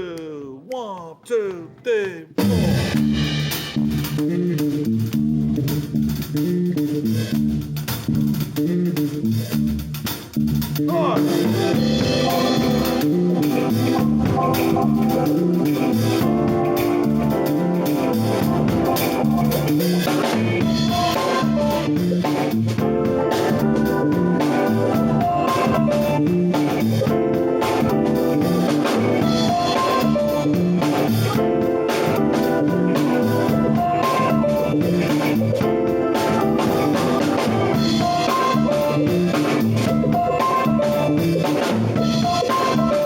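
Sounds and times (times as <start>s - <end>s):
steady drum beat: 0.0s - 43.0s
jazz fusion keyboards: 1.7s - 43.0s.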